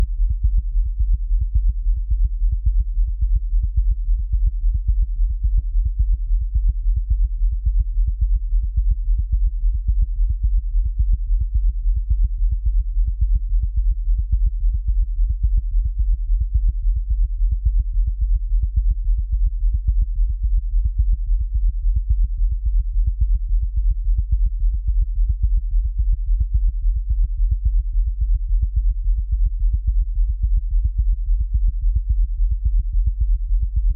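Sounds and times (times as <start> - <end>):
synthesized heartbeat: 0.0 - 33.9.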